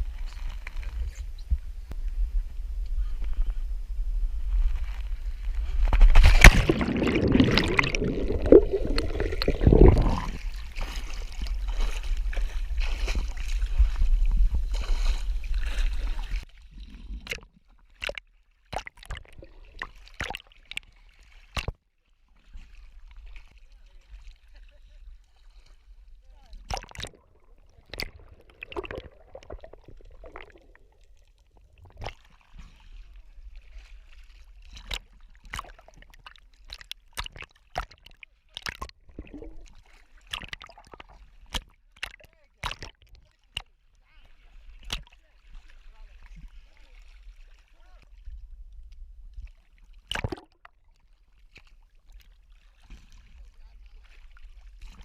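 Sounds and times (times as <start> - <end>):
water sloshing and gurgling: 0.0 - 55.0
small splashes and knocks: 5.7 - 16.5, 17.1 - 22.8, 26.4 - 31.2, 31.8 - 48.2, 49.3 - 55.0.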